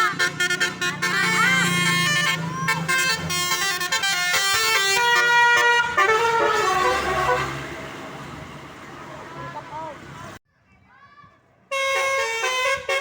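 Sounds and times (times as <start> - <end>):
musical air horn playing a tune: 0.0 - 7.7, 11.7 - 13.0.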